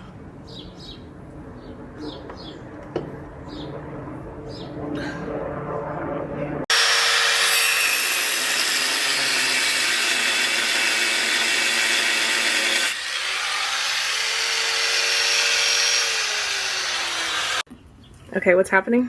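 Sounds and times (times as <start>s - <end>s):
angle grinder cutting metal: 6.7s - 17.7s.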